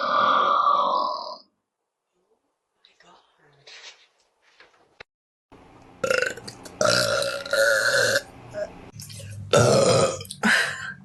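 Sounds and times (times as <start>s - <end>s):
girl burping: 9.5s - 10.6s.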